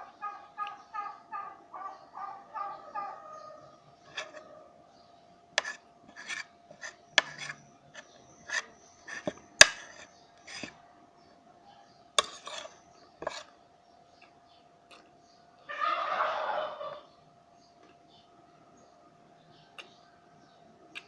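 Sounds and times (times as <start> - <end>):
utensils scraping a plate: 4.0 - 4.5, 5.6 - 10.8, 12.2 - 13.5.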